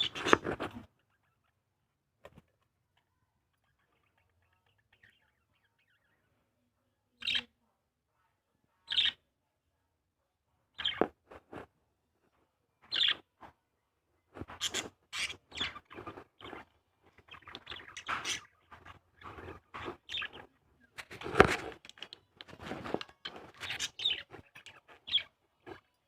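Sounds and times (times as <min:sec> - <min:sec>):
birds chirping and squawking: 0:00.0 - 0:01.6, 0:08.9 - 0:09.2, 0:10.8 - 0:11.1, 0:12.8 - 0:13.2, 0:14.4 - 0:26.0.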